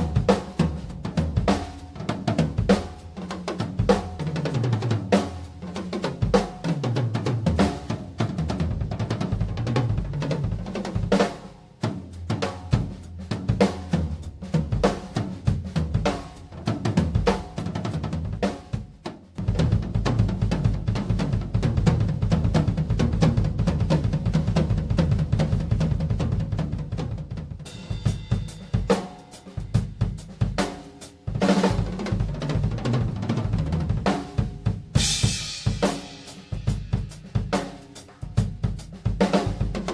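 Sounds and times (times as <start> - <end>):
bass drum: 0.0 - 39.9
cymbals: 27.7 - 30.0, 34.9 - 38.2
snare drum: 27.8 - 39.9.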